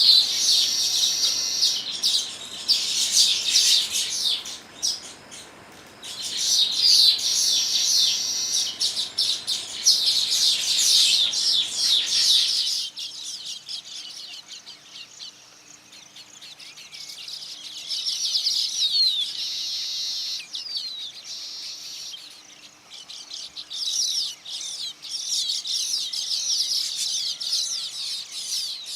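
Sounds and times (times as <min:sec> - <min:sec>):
birds chattering and chirping: 0:00.0 - 0:28.9.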